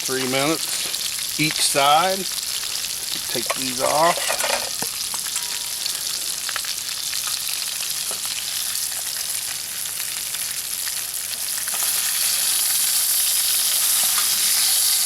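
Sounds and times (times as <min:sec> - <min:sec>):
food frying in hot oil: 0:00.0 - 0:15.0
oil popping and crackling: 0:00.0 - 0:15.0.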